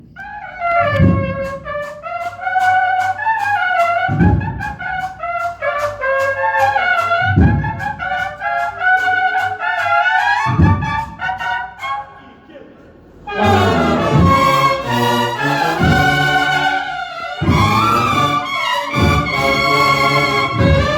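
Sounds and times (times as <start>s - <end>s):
snare drum strokes: 0.2s - 12.0s, 13.3s - 20.9s
brass band playing a march: 0.2s - 12.4s, 13.2s - 20.9s
bass drum: 0.8s - 1.9s, 4.1s - 5.0s, 7.2s - 8.4s, 10.5s - 11.4s, 13.4s - 16.6s, 17.4s - 20.9s.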